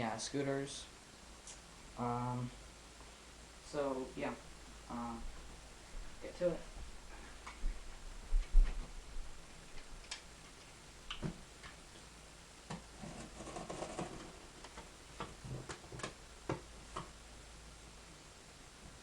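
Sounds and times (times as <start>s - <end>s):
faint clicks and taps: 6.8s - 9.0s, 9.6s - 12.1s, 12.7s - 17.2s
rustling or scraping: 12.8s - 16.1s.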